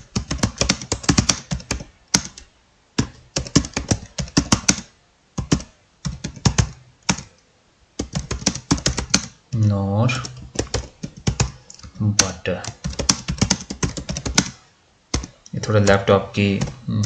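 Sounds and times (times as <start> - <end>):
laptop keyboard typing: 0.0 - 7.4, 8.0 - 9.4, 10.1 - 17.0.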